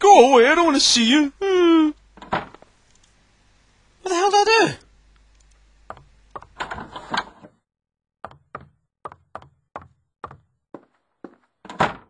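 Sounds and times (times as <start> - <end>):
knocking on a door: 8.2 - 10.5.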